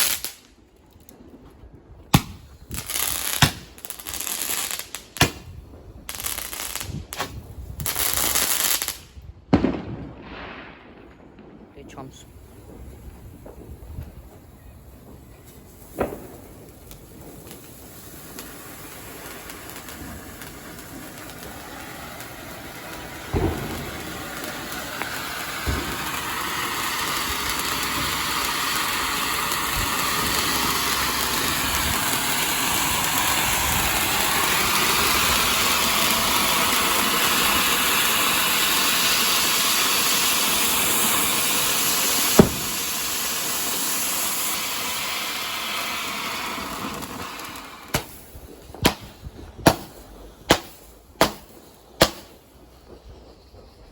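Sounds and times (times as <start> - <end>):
fire burning with hissing rush: 0.0 - 9.3, 10.1 - 53.9
fire pops and cracks: 0.0 - 53.9.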